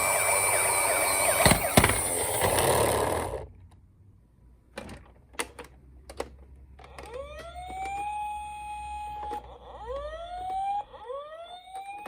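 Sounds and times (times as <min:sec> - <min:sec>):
toy siren wailing: 0:00.0 - 0:02.7, 0:06.9 - 0:12.0.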